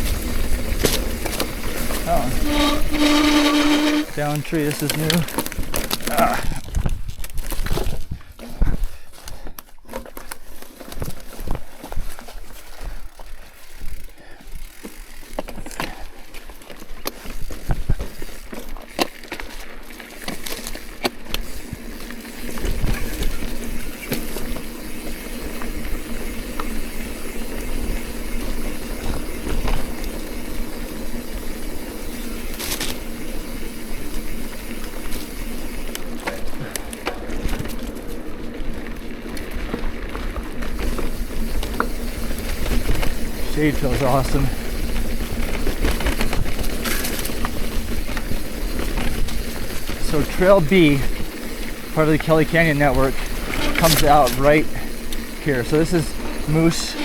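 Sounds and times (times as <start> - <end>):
bike rattle and tyre noise: 0.0 - 57.0.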